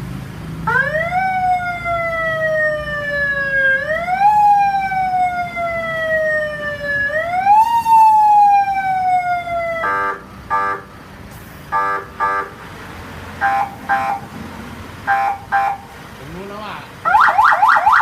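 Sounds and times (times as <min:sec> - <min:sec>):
electronic siren wailing: 0:00.7 - 0:10.2, 0:17.1 - 0:18.0.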